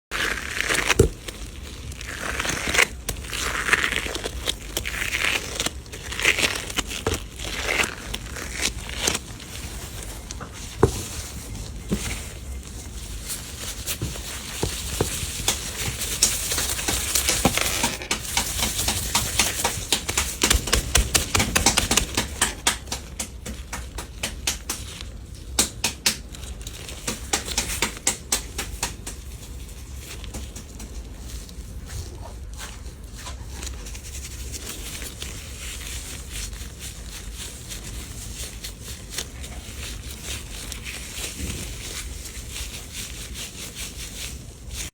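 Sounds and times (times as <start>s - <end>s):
paper crinkling: 0.1s - 44.9s.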